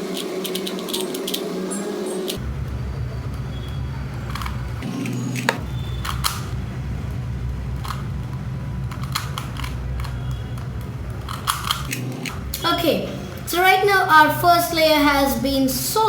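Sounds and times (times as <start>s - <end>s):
puzzle cube twisting clicks: 0.0s - 1.5s, 4.3s - 6.6s, 7.7s - 12.7s
steady low hum: 0.0s - 16.0s.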